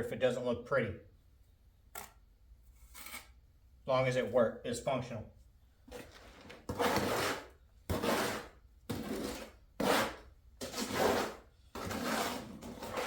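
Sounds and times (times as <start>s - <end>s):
tool scraping wet mortar: 5.9s - 13.0s.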